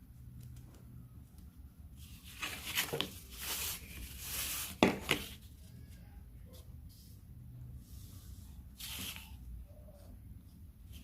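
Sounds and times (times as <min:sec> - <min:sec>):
faint handling noise: 0:00.3 - 0:07.3.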